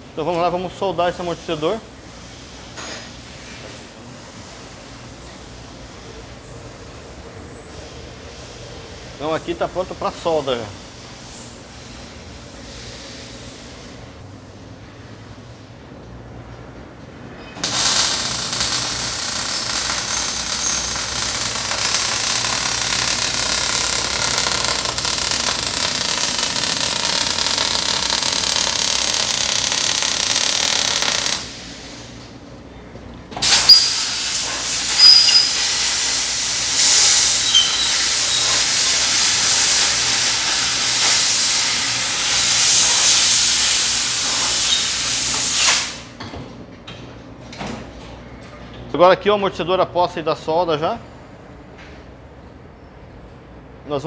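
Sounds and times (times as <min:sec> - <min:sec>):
welding pops: 0:17.6 - 0:31.6, 0:33.4 - 0:46.1
welding arc sizzling and crackling: 0:17.6 - 0:32.0, 0:33.4 - 0:46.2.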